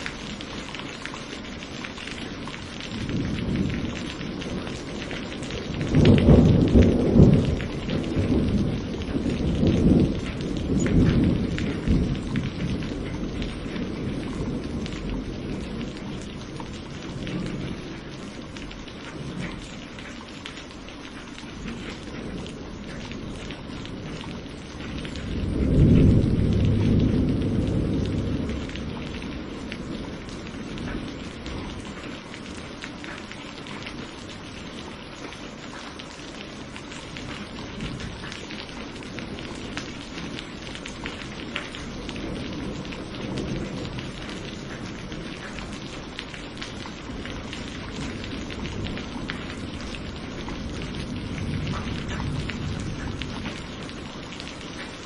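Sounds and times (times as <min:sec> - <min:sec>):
steady rain with dripping: 0:00.0 - 0:55.0
thunder rolling: 0:02.5 - 0:18.4, 0:21.6 - 0:32.1, 0:37.2 - 0:46.2, 0:46.8 - 0:55.0.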